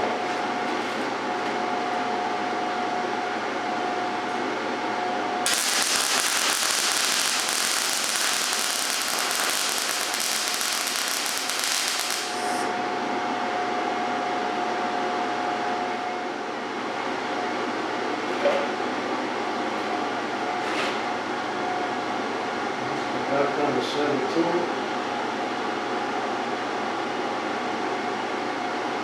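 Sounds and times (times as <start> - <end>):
steady hum with thin whine: 1.2 - 18.0
welding arc crackling: 5.5 - 12.7.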